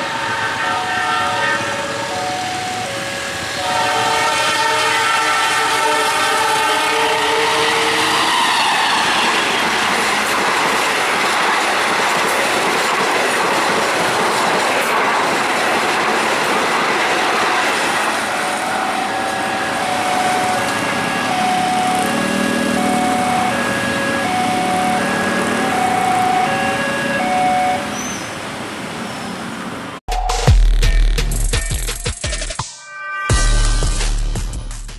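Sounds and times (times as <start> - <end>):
locomotive horn blast: 0.0 - 9.6, 18.2 - 28.3, 32.7 - 34.3
two-tone crossing alarm: 0.0 - 10.3, 17.6 - 28.4
train wheels clattering: 8.0 - 18.4
music: 30.1 - 34.9.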